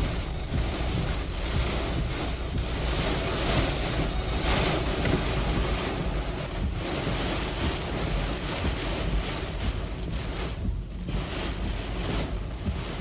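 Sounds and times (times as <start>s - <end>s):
strong gusting wind: 0.0s - 9.7s
wind buffeting microphone: 0.0s - 13.0s.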